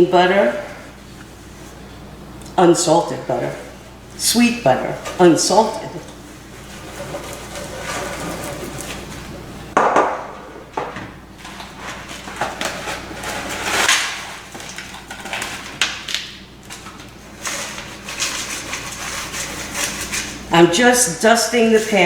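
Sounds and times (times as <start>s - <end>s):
scrapes on kitchen counter: 4.7s - 14.4s, 17.4s - 20.5s.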